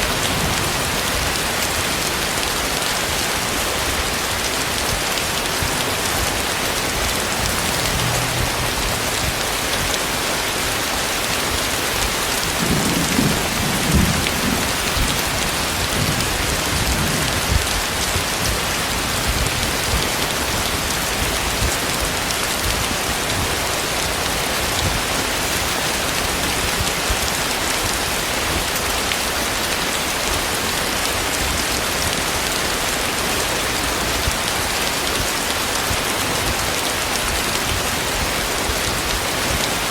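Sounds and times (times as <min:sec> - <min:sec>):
thunder rumbling: 0:00.0 - 0:03.2, 0:05.0 - 0:25.2
heavy rain pouring: 0:00.0 - 0:39.9.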